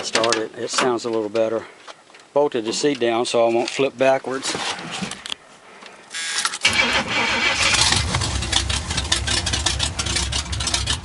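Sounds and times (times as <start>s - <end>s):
starter cranking engine: 6.2s - 11.0s
engine idling: 6.6s - 11.0s.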